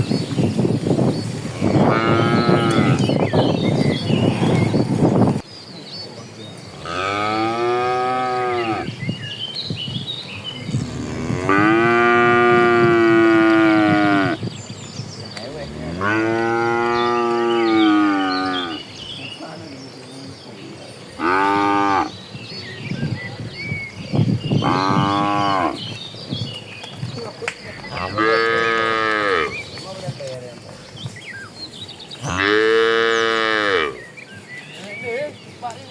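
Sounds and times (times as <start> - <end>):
cows mooing: 1.6 - 3.2, 6.8 - 8.9, 10.6 - 14.4, 15.5 - 18.9, 21.2 - 22.2, 24.6 - 25.8, 27.8 - 29.6, 32.2 - 34.0.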